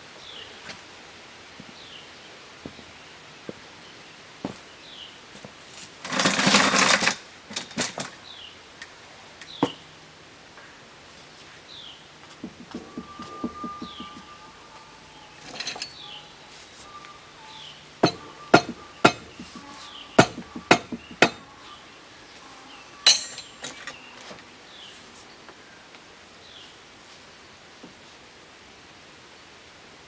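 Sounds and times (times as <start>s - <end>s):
tools knocking on metal: 12.4s - 14.3s, 18.0s - 21.5s, 23.1s - 23.8s
rattling metal clatter: 15.4s - 16.0s, 18.0s - 19.6s, 20.2s - 21.4s, 23.1s - 24.0s.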